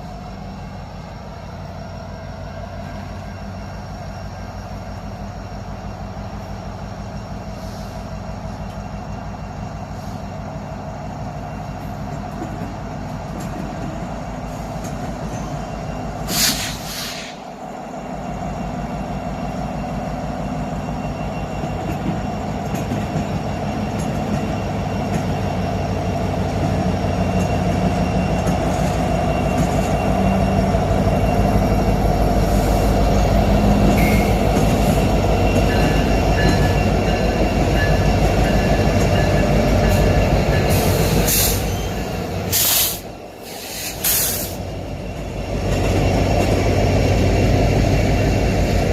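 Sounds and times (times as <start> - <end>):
train rumbling past: 0.0 - 48.9
faint wheel squeal: 40.7 - 44.6.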